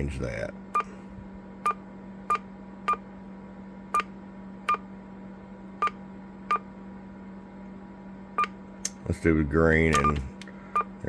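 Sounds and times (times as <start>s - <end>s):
steady low hum: 0.0s - 11.0s
radio key beeps: 9.9s - 10.9s.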